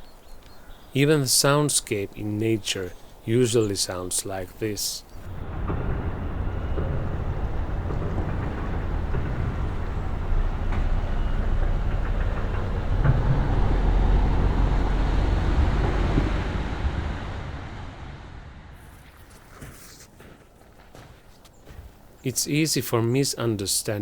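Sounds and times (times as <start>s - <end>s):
traffic rumble: 0.0s - 24.0s
vehicle passing: 5.1s - 19.9s.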